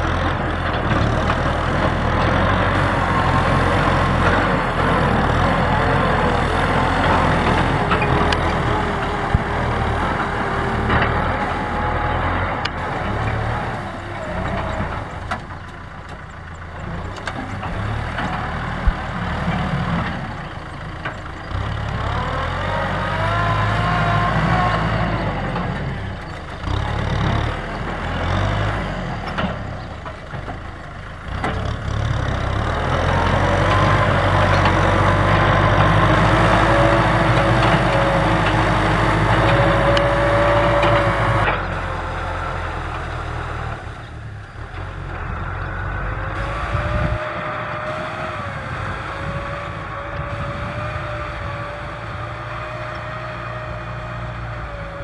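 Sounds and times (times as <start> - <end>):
tractor diesel engine under load: 0.0 - 55.0
high-pitched engine whine: 32.0 - 55.0.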